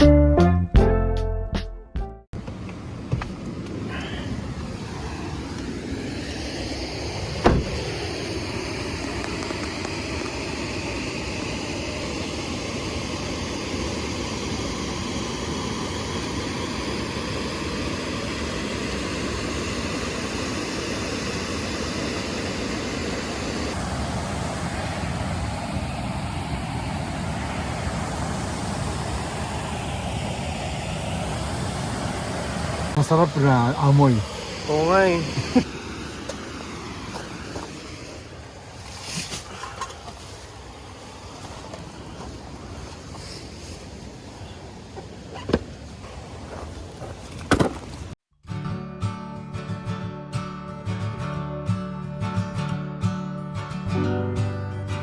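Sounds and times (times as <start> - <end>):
car driving: 2.4 - 10.4.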